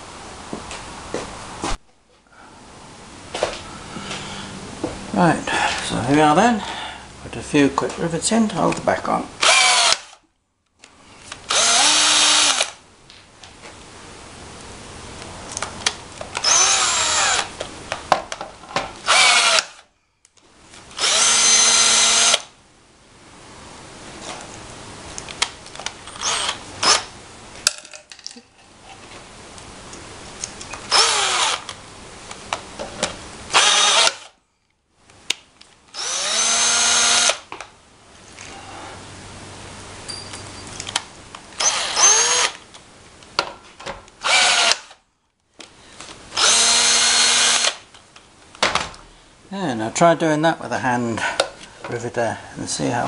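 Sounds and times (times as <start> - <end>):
cordless drill whining: 9.4 - 10.2, 11.4 - 12.8, 16.4 - 17.5, 19.0 - 19.9, 20.9 - 22.5, 26.1 - 27.1, 30.9 - 31.8, 33.5 - 34.4, 36.0 - 37.5, 41.6 - 42.6, 44.2 - 45.0, 46.3 - 47.8
clicks and handling noise: 40.3 - 41.6.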